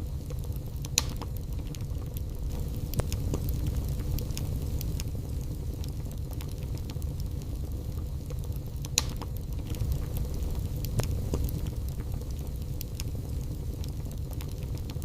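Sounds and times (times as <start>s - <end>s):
fire crackles and pops: 0.0s - 15.0s
fire low rumble: 0.0s - 15.0s.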